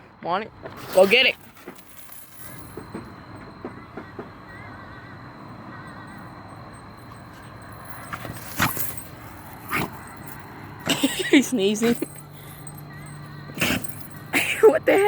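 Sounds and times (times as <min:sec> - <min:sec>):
dog sneezing: 0:13.5 - 0:14.0.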